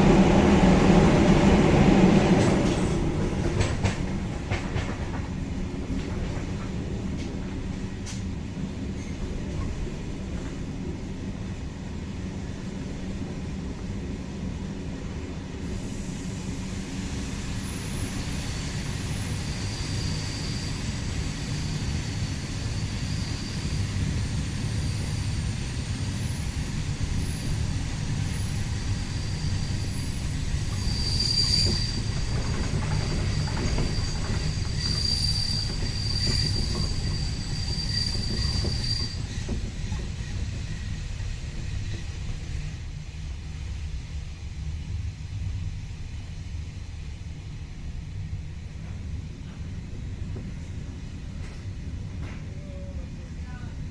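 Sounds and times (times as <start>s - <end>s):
train rumbling on rails: 0.0s - 53.9s
high wheel squeal: 17.5s - 41.0s.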